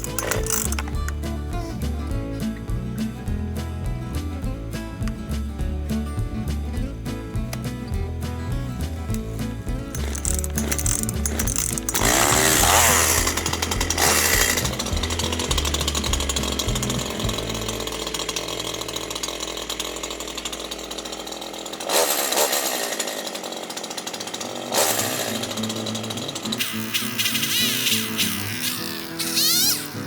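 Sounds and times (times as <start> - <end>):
chainsaw revving: 0.0 - 2.0, 8.8 - 30.0
background music: 0.0 - 18.2.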